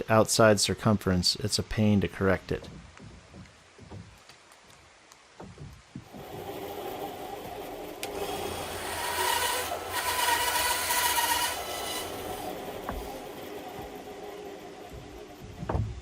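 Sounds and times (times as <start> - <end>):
power drill driving screws: 6.1 - 15.2.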